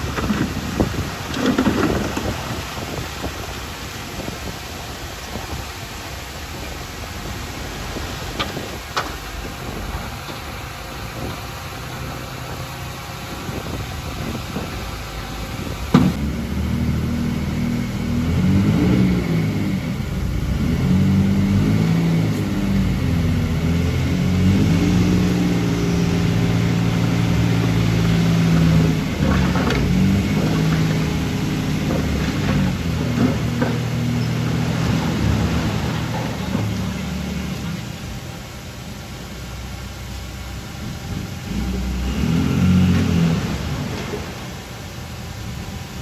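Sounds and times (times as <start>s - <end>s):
diesel engine revving under load: 0.0s - 46.0s
sharp metallic knocks: 15.8s - 16.5s.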